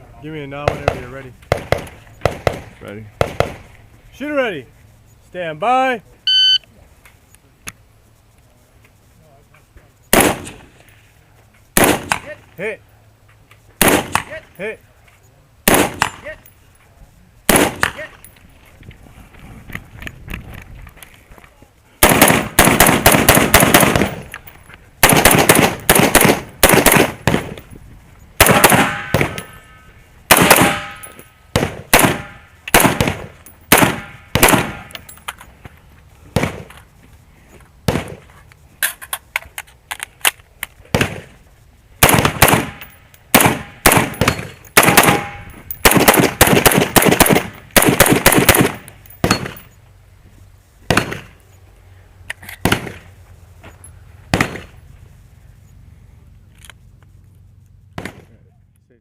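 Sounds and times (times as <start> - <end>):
rifle firing rapid shots: 10.1 - 10.6, 11.8 - 12.2, 13.8 - 14.3, 15.6 - 16.1, 17.5 - 18.0, 22.0 - 24.3, 25.0 - 27.6, 28.4 - 29.4, 30.3 - 34.9, 42.0 - 49.6.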